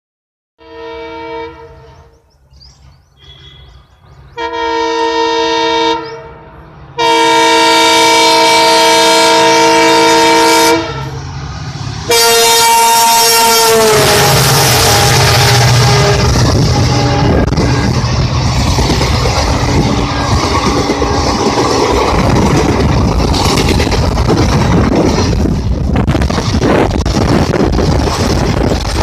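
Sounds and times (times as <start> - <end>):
locomotive air horn blasts: 0.6 - 2.1, 3.2 - 3.8, 4.4 - 11.2, 12.1 - 18.2
train rushing by with low rumble: 0.6 - 29.0.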